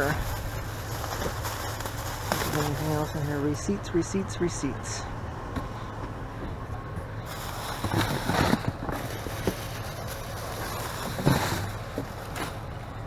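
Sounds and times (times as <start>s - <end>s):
paper and plastic rustling: 0.0s - 3.8s, 7.2s - 13.0s
steady low rumble: 0.0s - 13.0s.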